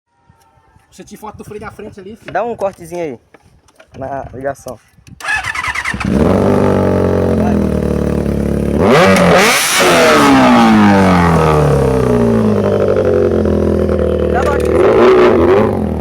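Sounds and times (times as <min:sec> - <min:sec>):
engine idling and revving: 0:05.2 - 0:16.0.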